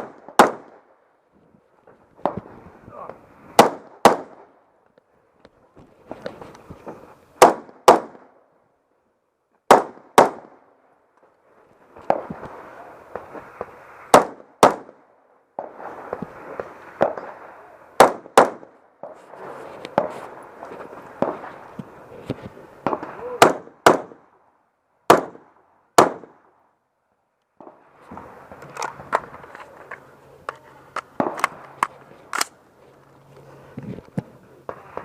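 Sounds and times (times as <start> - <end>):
rifle shots: 0.0 - 0.9, 3.6 - 4.5, 7.4 - 8.3, 9.7 - 10.6, 14.1 - 15.0, 18.0 - 18.7, 22.8 - 24.3, 25.1 - 26.5.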